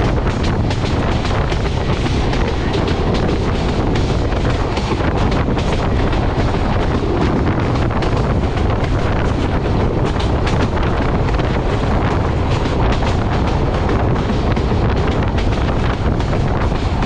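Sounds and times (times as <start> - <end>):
train wheels rumbling on rails: 0.0 - 17.0
wind buffeting microphone: 0.0 - 17.0.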